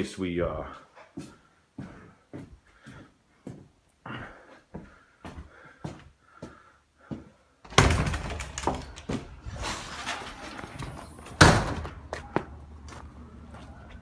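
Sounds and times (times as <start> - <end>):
clattering and rattling: 7.7 - 12.0.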